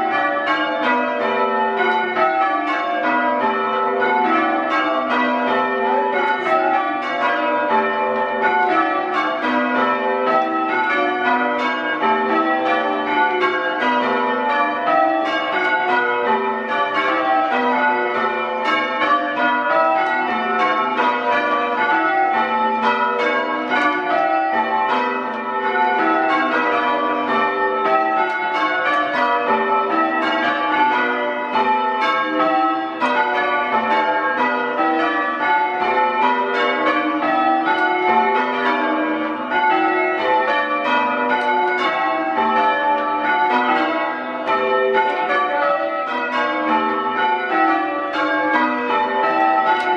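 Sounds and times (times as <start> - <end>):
church bells change ringing: 0.0 - 49.9.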